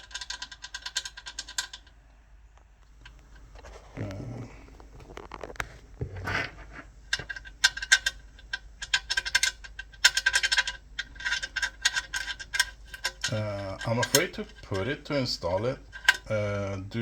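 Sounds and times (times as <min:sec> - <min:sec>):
metal bolts clicking and rattling: 0:00.0 - 0:02.0, 0:07.0 - 0:16.5.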